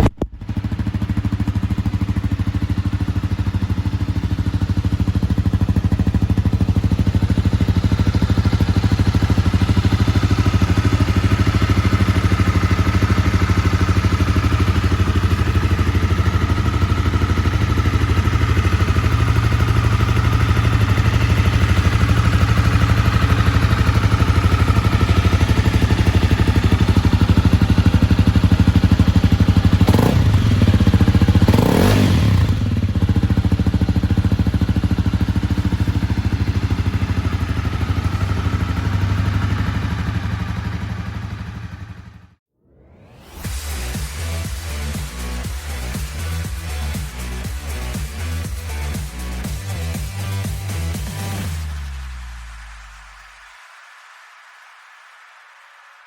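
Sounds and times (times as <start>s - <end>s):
motorcycle engine idling and revving: 0.0s - 42.4s, 43.3s - 53.1s.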